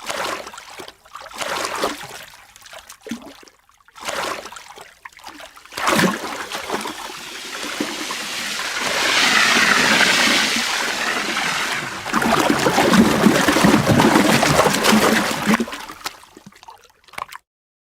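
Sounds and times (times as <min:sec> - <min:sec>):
water rushing and splashing: 0:05.7 - 0:16.2.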